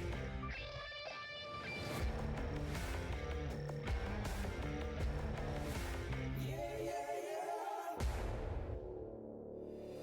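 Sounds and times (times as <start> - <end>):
guitar-led music with beat: 0.0 - 6.5.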